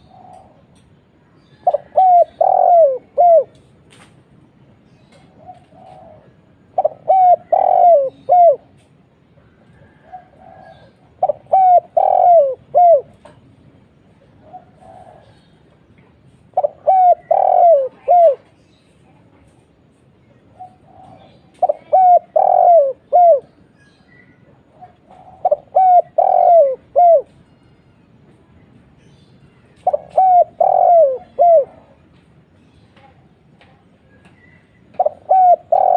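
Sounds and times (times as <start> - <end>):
dove cooing: 0.0 - 0.7, 1.6 - 3.6, 5.3 - 8.8, 9.7 - 13.4, 14.4 - 15.5, 16.5 - 18.6, 20.5 - 23.6, 24.6 - 27.4, 29.8 - 32.0, 34.9 - 35.9.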